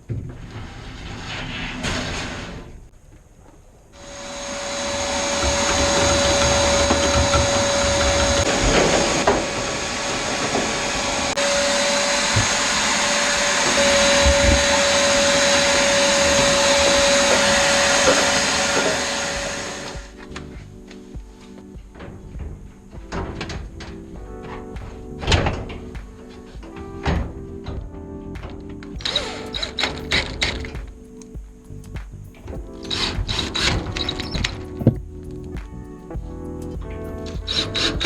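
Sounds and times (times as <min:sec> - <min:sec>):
electric fan motor whining: 0:04.0 - 0:20.2.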